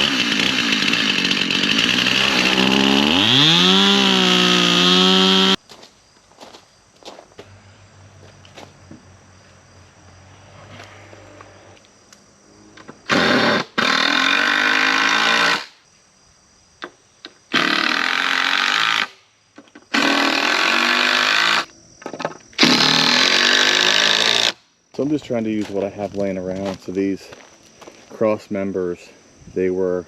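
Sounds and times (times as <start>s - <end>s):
power drill driving screws into wood: 0.0s - 5.6s, 13.1s - 15.7s, 17.5s - 19.2s, 19.9s - 21.7s, 22.6s - 24.6s.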